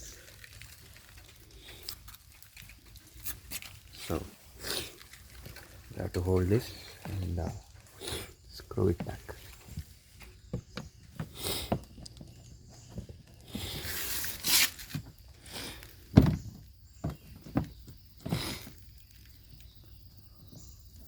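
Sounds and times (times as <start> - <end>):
plastic knocks and clicks: 10.5 - 13.2.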